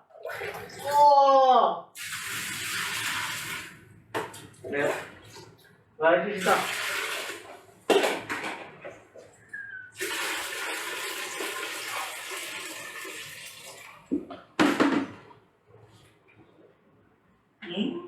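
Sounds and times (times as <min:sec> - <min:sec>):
water pouring: 0:00.1 - 0:01.0, 0:02.0 - 0:05.6, 0:06.4 - 0:07.8, 0:09.9 - 0:14.2
water splashing: 0:06.4 - 0:07.7.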